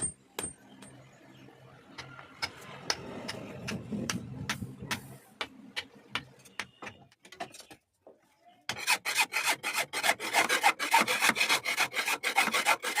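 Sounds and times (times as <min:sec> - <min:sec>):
hand tool rasping: 0:08.7 - 0:13.0.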